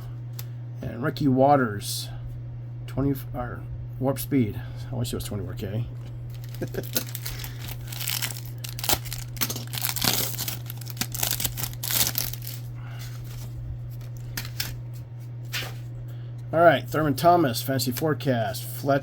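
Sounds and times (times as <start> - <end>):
low electrical hum: 0.0 - 19.0
foil wrapper tearing and crinkling: 6.3 - 14.8.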